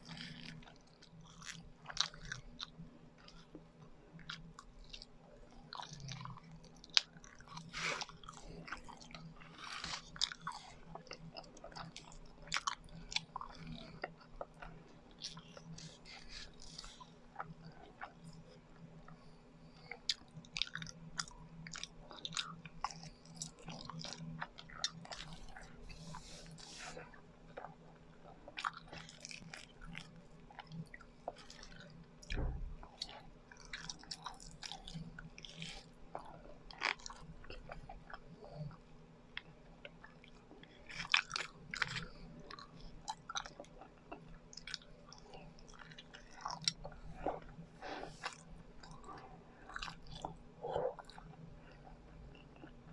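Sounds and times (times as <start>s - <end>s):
sticky chewing mouth sounds: 19.9s - 52.9s.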